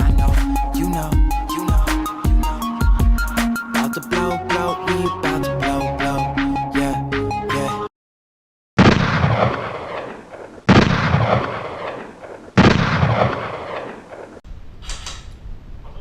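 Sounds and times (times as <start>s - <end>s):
outdoor background noise: 8.8s - 16.0s.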